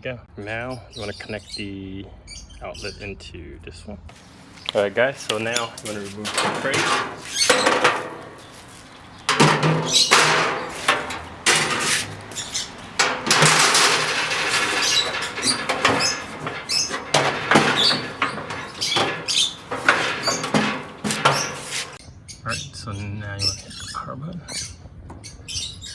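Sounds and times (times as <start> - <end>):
metal grill grates scraping and knocking: 4.1 - 22.0.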